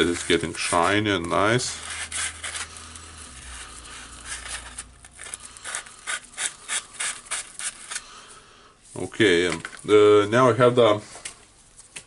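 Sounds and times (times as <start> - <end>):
sandpaper rubbing on metal: 0.0 - 8.0.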